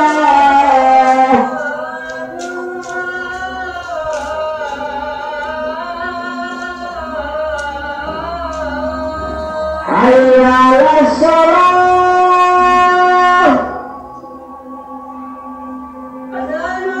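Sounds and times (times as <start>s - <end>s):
person chanting call to prayer: 0.0s - 17.0s.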